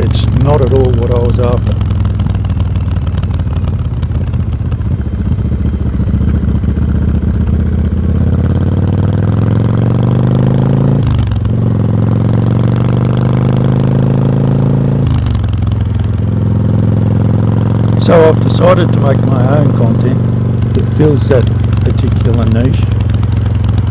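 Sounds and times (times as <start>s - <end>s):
motorcycle exhaust accelerating: 0.0s - 23.9s.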